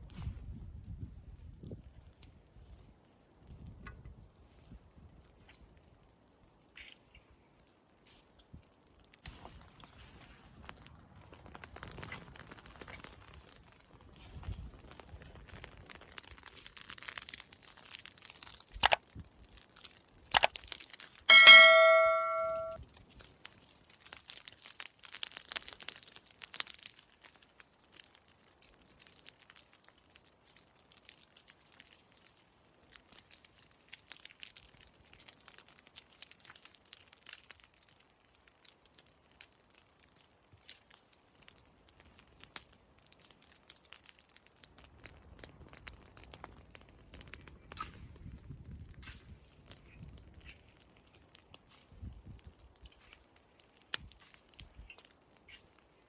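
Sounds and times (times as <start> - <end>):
burning straw crackling: 0.0 - 56.0
metallic bell-like ring: 21.3 - 22.8.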